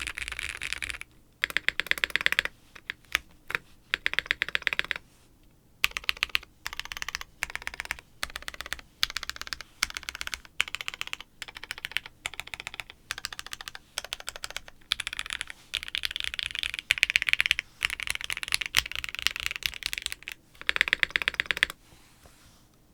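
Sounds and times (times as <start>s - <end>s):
fast typing on mechanical keyboard: 0.0s - 5.0s, 5.8s - 21.8s.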